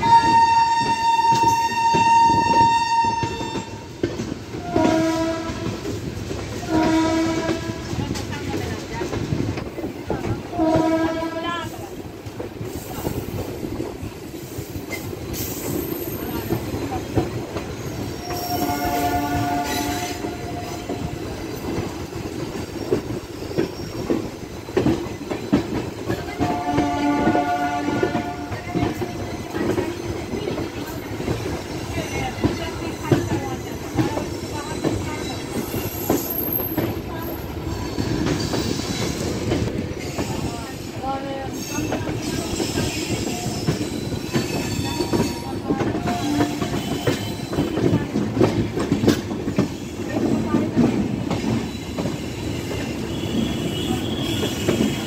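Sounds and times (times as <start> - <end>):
train horn blasts: 0.0 - 4.0, 4.6 - 5.9, 6.6 - 8.0, 10.5 - 11.8, 18.2 - 21.2, 26.4 - 29.8, 45.1 - 48.0, 52.9 - 55.0
train wheels clattering: 0.0 - 55.0.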